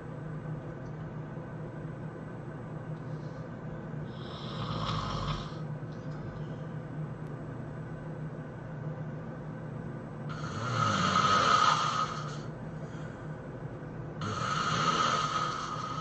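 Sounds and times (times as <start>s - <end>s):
person snoring loudly: 4.1s - 5.6s, 10.3s - 12.5s, 14.2s - 16.0s.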